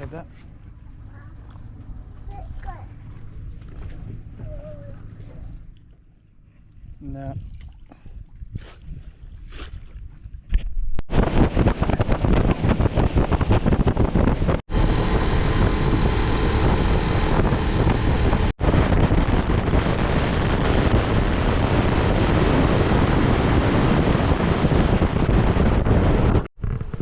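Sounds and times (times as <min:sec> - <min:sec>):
boat motor droning: 0:00.0 - 0:07.0, 0:11.1 - 0:27.0
wind buffeting microphone: 0:06.8 - 0:27.0.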